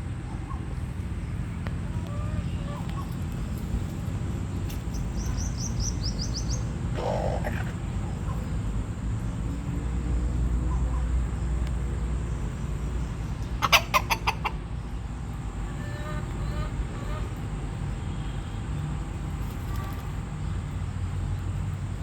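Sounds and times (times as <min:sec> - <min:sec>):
rooster clucking: 0:06.9 - 0:08.5, 0:13.5 - 0:14.9, 0:15.6 - 0:17.4.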